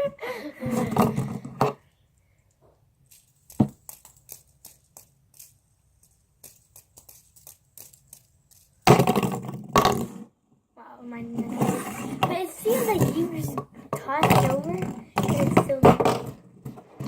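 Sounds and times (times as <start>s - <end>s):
fidget spinners clicking and tapping: 2.5s - 9.3s, 11.7s - 16.4s.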